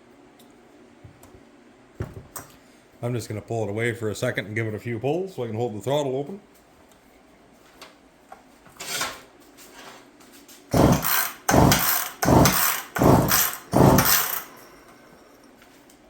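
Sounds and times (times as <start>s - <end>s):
chainsaw recoil starter pulled: 10.7s - 14.6s
engine turning over: 10.7s - 14.6s.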